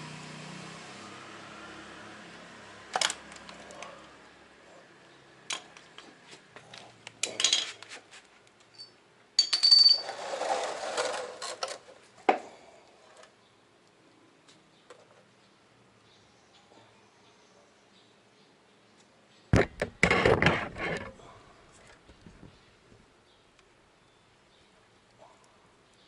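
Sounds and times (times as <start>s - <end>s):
engine cutting off: 0.0s - 4.3s.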